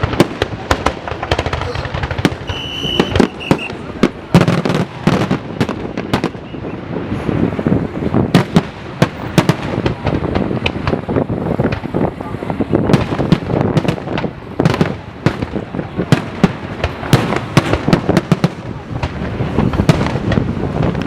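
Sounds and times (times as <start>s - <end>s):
fireworks bangs and crackling: 0.0s - 21.0s.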